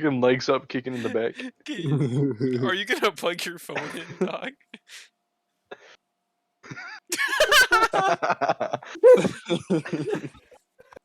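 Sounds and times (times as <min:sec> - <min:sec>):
person laughing: 0:00.9 - 0:02.9, 0:03.7 - 0:05.0, 0:06.6 - 0:10.6.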